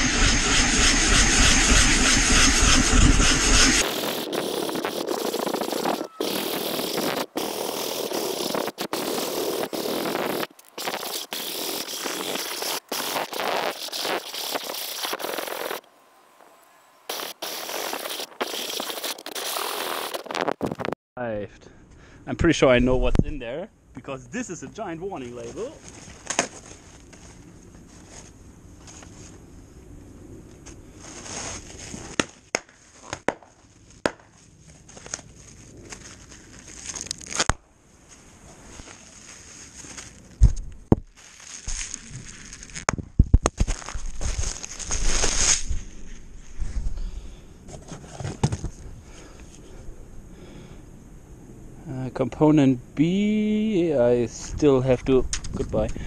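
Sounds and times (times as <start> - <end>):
sandpaper rasping on wood: 0.0 - 15.8, 17.1 - 20.3
plastic packaging crinkling: 34.9 - 37.5, 41.1 - 42.9, 43.5 - 45.6.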